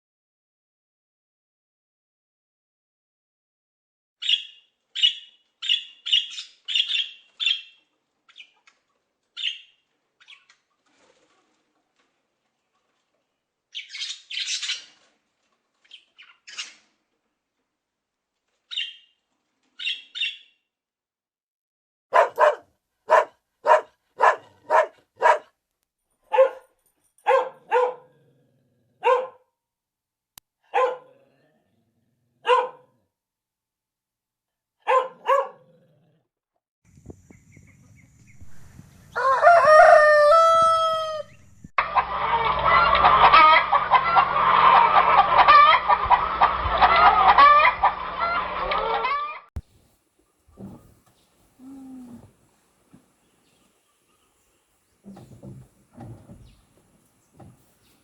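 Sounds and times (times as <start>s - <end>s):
animal barking: 22.1s - 25.6s, 26.3s - 26.7s, 27.3s - 29.5s, 30.7s - 31.5s, 32.4s - 33.0s, 34.8s - 35.9s.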